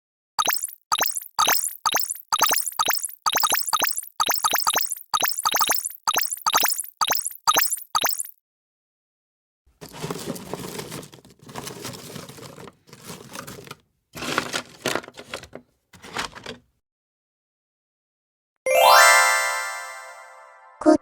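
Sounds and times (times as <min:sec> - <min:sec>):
rustling and crumpling: 0:09.8 - 0:16.6.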